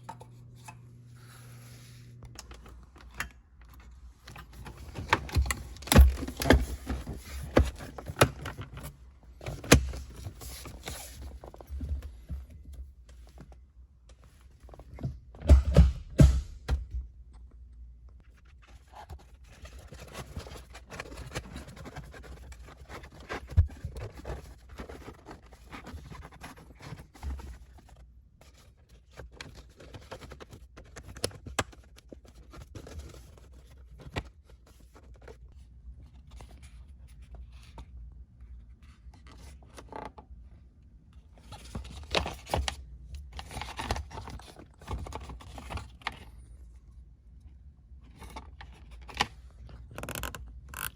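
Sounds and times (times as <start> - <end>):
scraping and scratching of parts: 18.2 - 38.0, 48.0 - 50.9.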